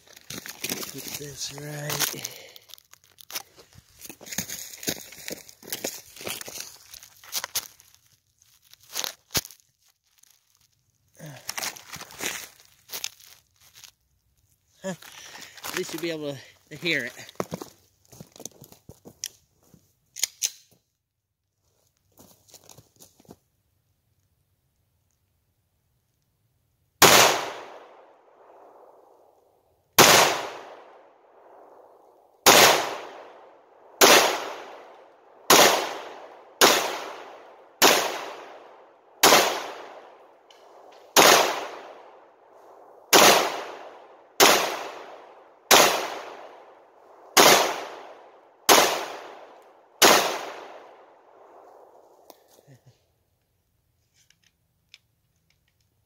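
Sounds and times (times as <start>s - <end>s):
pistol shots with ringing echo: 27.0s - 28.9s, 30.0s - 31.8s, 32.4s - 40.2s, 41.1s - 42.2s, 43.1s - 46.8s, 47.4s - 51.5s.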